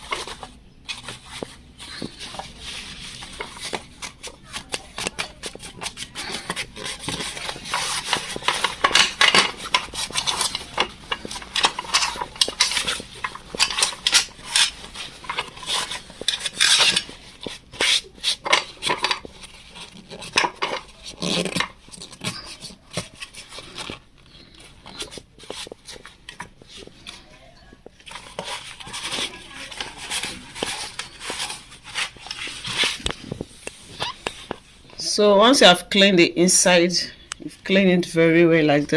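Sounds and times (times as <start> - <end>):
cloth rag wiping metal pan: 0.0 - 21.0
metal clinks and scrapes: 5.1 - 34.6.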